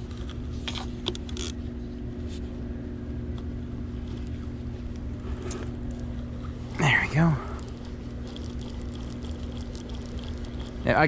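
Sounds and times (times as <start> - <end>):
low mechanical hum: 0.0 - 11.0.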